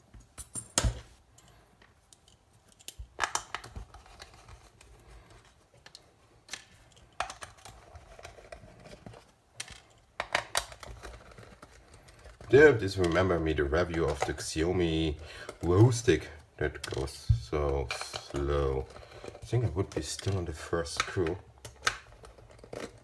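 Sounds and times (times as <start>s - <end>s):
tools clicking and tapping: 0.1s - 3.8s.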